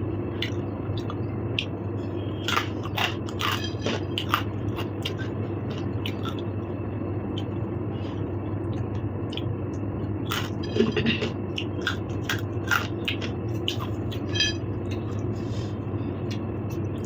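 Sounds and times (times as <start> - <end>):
steady low hum: 0.0 - 17.0
person chewing and crunching food: 0.4 - 6.6, 10.2 - 15.2.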